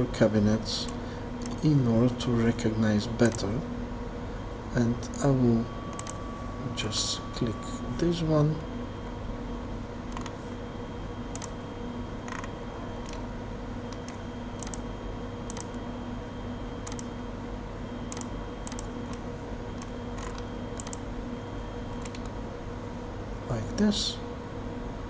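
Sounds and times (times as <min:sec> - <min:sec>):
electrical hum: 0:00.0 - 0:25.0
computer mouse button clicks: 0:16.8 - 0:17.1.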